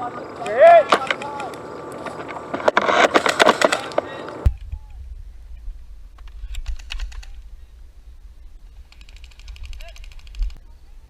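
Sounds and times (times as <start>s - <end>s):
wind on microphone: 4.4s - 11.0s
rapid clicking: 6.0s - 7.9s, 8.6s - 10.6s.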